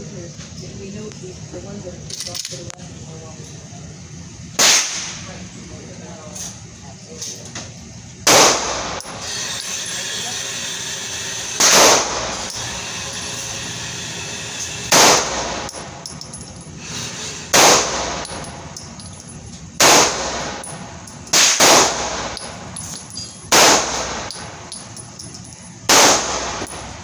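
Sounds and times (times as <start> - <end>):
pistol shots with echo: 4.6 - 5.2, 8.3 - 9.2, 11.6 - 12.3, 14.9 - 15.9, 17.5 - 18.5, 19.8 - 20.7, 21.3 - 22.6, 23.5 - 24.5, 25.9 - 26.9.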